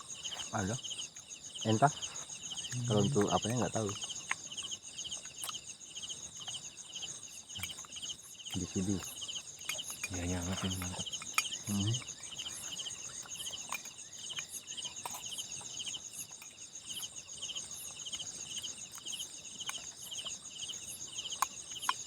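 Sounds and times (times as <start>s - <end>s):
crickets chirping: 0.0s - 22.0s
steady high insect buzz: 0.0s - 22.0s.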